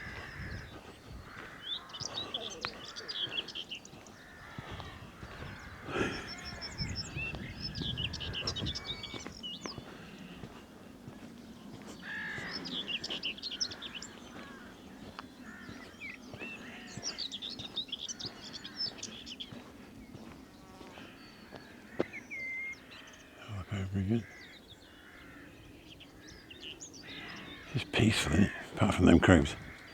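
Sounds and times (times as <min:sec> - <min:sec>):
crows cawing: 0:00.0 - 0:29.9
small birds chirping: 0:00.0 - 0:29.9.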